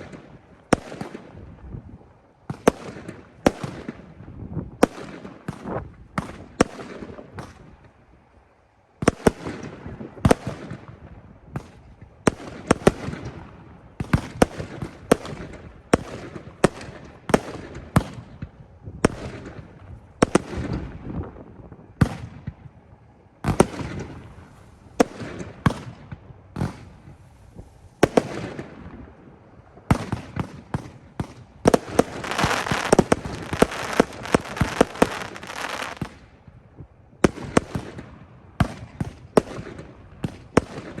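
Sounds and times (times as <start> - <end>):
firework launch thumps and reports: 31.2 - 36.2
firework crackle: 31.3 - 36.4.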